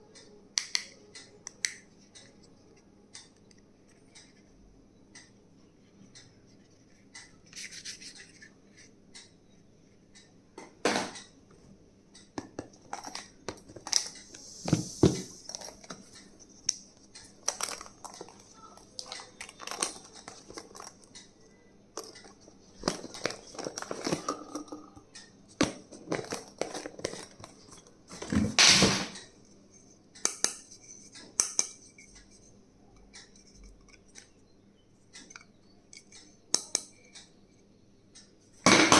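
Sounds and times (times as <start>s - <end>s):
stationery packaging rustling: 17.4s - 21.0s, 22.0s - 24.9s, 25.7s - 28.3s.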